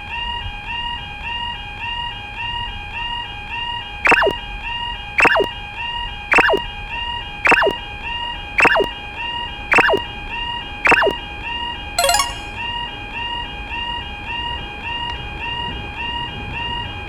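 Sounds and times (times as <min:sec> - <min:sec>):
sharp downward sweeping tone: 0:04.1 - 0:04.4, 0:05.2 - 0:05.5, 0:06.3 - 0:06.6, 0:07.5 - 0:07.8, 0:08.6 - 0:08.9, 0:09.7 - 0:10.0, 0:10.9 - 0:11.2
two-note electronic crossing alarm: 0:04.1 - 0:04.4, 0:05.2 - 0:05.5, 0:06.3 - 0:06.6, 0:07.5 - 0:07.8, 0:08.6 - 0:08.9, 0:09.7 - 0:10.0, 0:10.9 - 0:11.2, 0:12.0 - 0:12.6.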